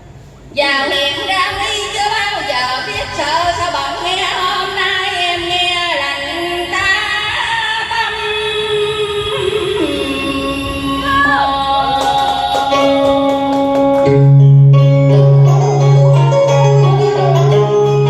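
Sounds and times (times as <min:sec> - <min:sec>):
instrumental backing music: 0:00.0 - 0:18.0
woman singing: 0:00.6 - 0:14.2.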